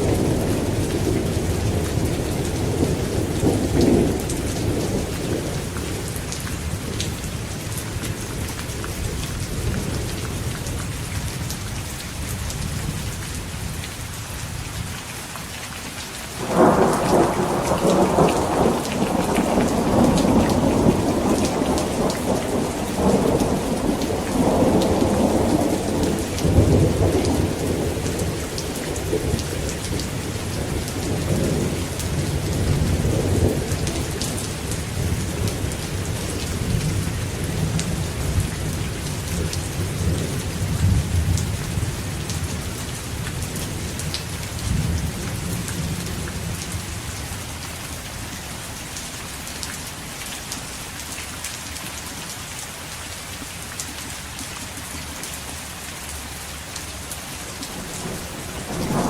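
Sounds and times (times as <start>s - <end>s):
steady rain falling: 0.0s - 59.0s
thunder rumbling: 16.4s - 42.6s, 57.7s - 59.0s.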